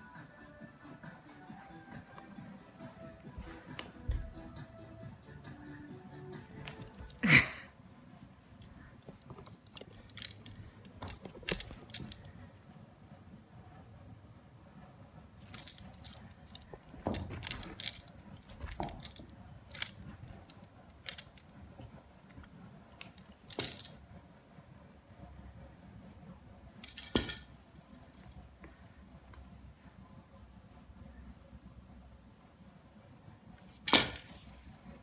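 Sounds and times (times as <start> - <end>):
toy clicks and rattles: 8.6 - 12.4, 15.4 - 24.0.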